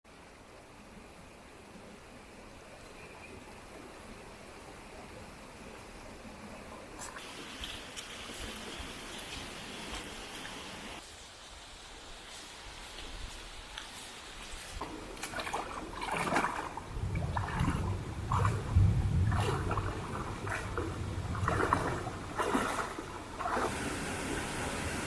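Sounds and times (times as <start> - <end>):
water splashing and gurgling: 14.7 - 25.0
low rumble: 16.9 - 22.4.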